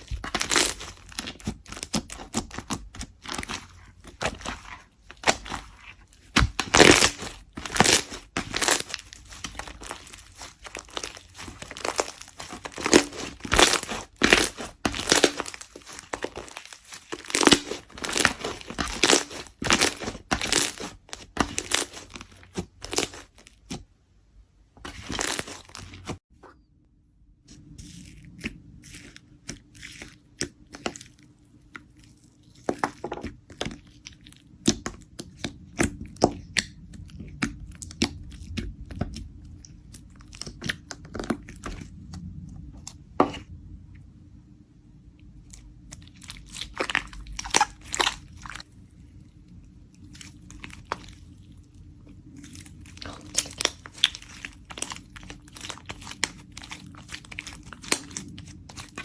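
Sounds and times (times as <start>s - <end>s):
slime crackling and popping: 0.0s - 23.8s, 45.9s - 48.7s, 50.0s - 59.0s.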